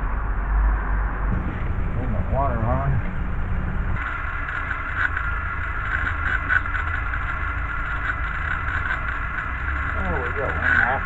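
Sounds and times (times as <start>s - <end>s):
small gasoline engine running: 1.3s - 4.0s.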